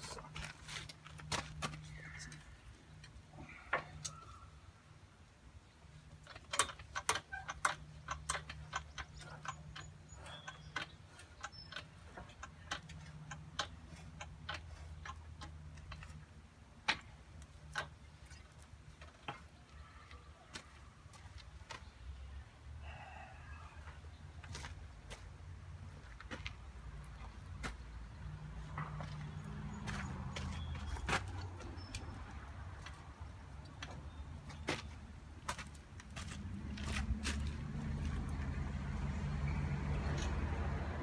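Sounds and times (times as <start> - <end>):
metal parts clicking and clinking: 6.1 - 16.3.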